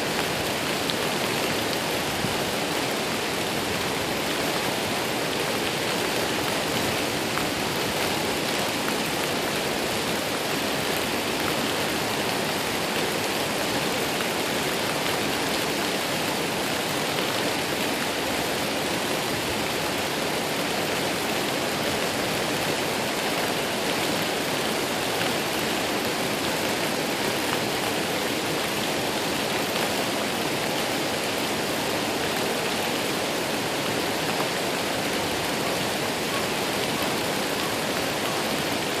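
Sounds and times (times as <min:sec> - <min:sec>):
waterfall roaring: 0:00.0 - 0:39.0.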